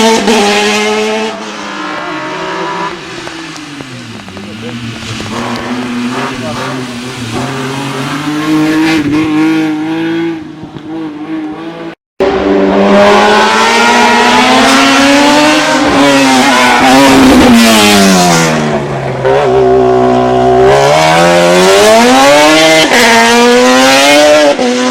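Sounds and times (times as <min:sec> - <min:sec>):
racing car engine revving: 0:00.0 - 0:24.9.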